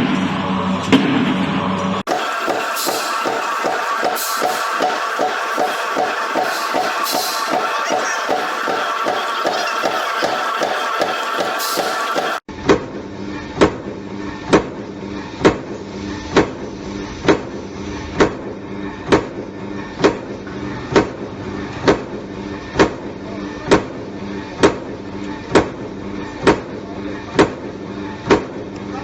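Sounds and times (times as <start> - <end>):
mechanical hum: 0.0 - 29.0
sharp metallic machine strokes: 2.1 - 12.4.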